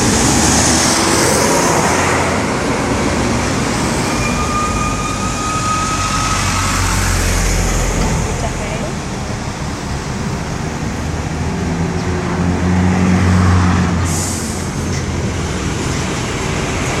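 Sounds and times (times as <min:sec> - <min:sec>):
bus engine humming: 0:00.0 - 0:17.0.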